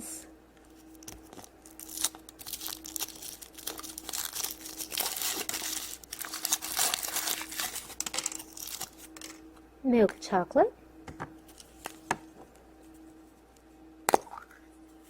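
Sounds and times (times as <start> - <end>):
wrapper crinkling and tearing: 0.9 - 9.4.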